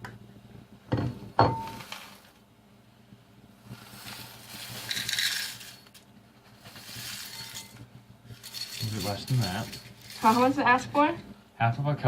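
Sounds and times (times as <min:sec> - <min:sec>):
cornflakes pouring into cup: 0:01.7 - 0:02.4, 0:03.6 - 0:10.6.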